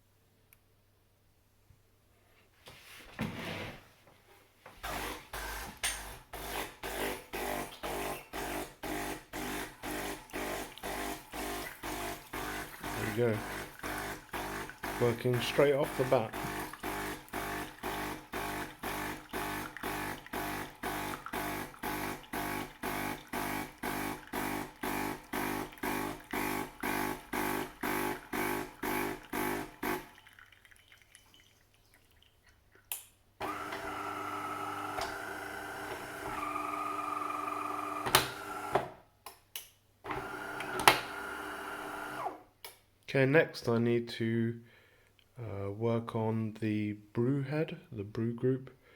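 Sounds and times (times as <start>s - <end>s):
espresso machine pump pulsing: 4.8s - 30.1s, 33.4s - 38.9s, 40.1s - 42.4s
water flowing: 9.0s - 32.7s.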